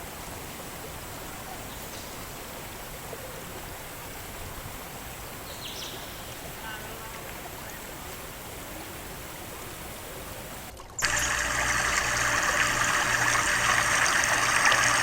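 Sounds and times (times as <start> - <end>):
close rush of water: 11.0 - 15.0.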